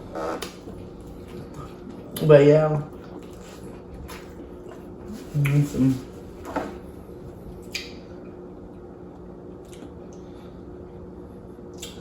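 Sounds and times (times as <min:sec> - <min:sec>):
steady low hum: 0:00.0 - 0:12.0
wet eating sounds: 0:00.5 - 0:06.0, 0:09.6 - 0:10.2.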